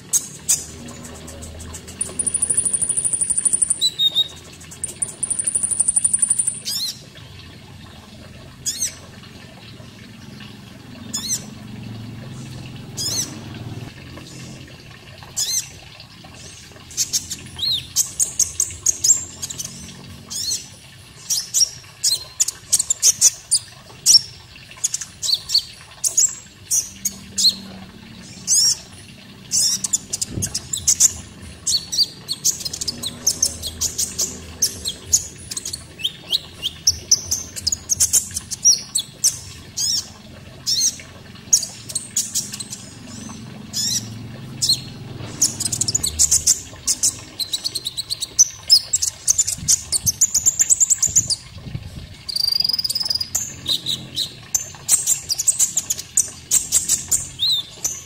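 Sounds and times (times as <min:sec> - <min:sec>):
faint running water: 0:00.0 - 0:58.0
sharp high bird chirps: 0:01.6 - 0:07.0.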